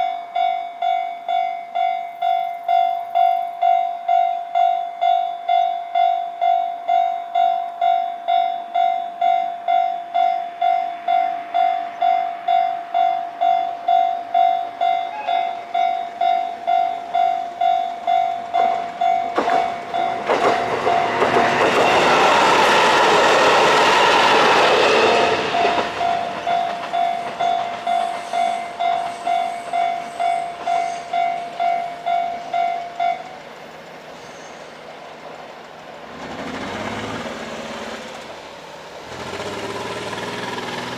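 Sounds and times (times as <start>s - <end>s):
level-crossing warning bell ringing: 0.0s - 34.9s
diesel railcar passing: 0.0s - 40.9s
sharp train wheel knocks: 18.6s - 29.6s.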